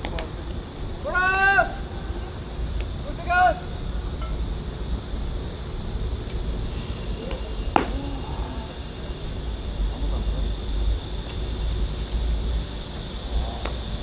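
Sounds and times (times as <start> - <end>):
insects chirping: 0.0 - 14.0
sharp crack: 7.7 - 8.6.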